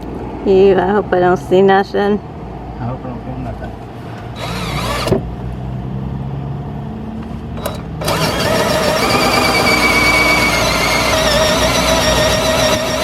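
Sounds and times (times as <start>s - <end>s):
power drill with hole saw whining: 4.4s - 5.2s, 7.6s - 13.0s.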